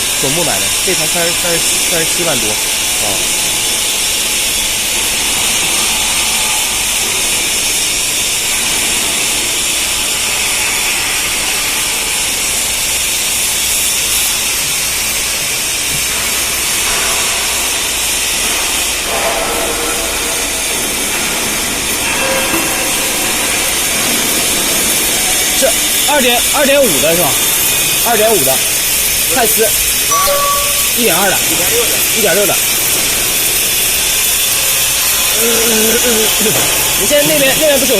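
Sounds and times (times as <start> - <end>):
welding machine hissing: 0.0 - 37.9
low hum: 30.1 - 31.1.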